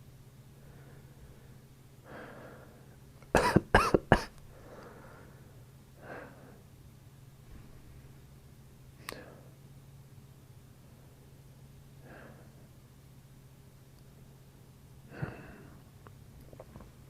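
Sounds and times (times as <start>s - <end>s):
soft breaths: 0.5s - 3.1s, 4.4s - 6.8s, 9.0s - 9.7s, 12.0s - 12.8s, 15.1s - 16.0s
man coughing: 3.4s - 4.4s.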